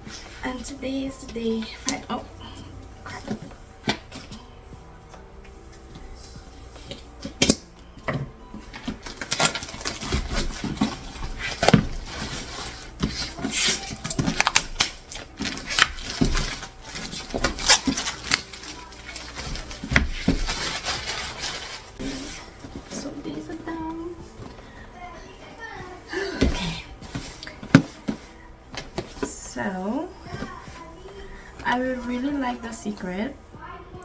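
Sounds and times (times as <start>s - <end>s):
packaging rustling and crinkling: 8.6s - 23.8s.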